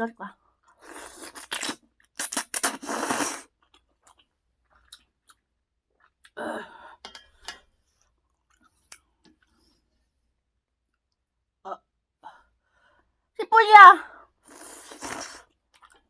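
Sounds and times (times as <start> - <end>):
quiet chewing: 0.7 - 6.4, 14.5 - 16.0.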